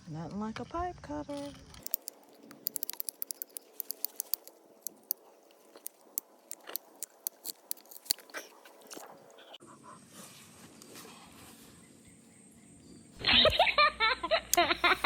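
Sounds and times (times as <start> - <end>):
faint steady background noise: 0.0 - 15.0
pipe cutter clicking and crunching: 1.4 - 9.4.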